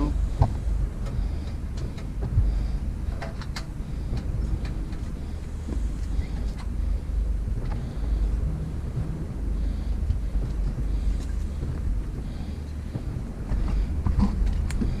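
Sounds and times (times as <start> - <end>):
low rumble: 0.0 - 15.0.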